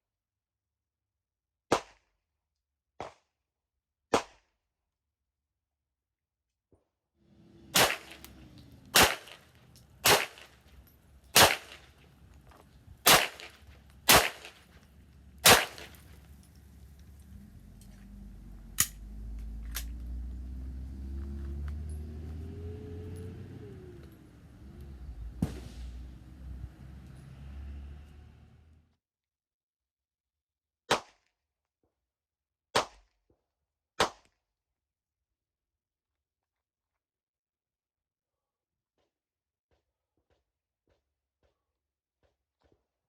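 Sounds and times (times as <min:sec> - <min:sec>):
low rumble rising and falling: 0:07.3 - 0:28.9
pistol shots: 0:07.6 - 0:16.3.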